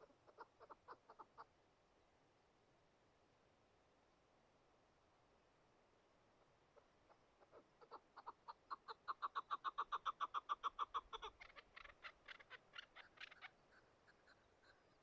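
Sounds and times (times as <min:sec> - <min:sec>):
partridge calling: 0:00.0 - 0:01.5, 0:07.4 - 0:15.0.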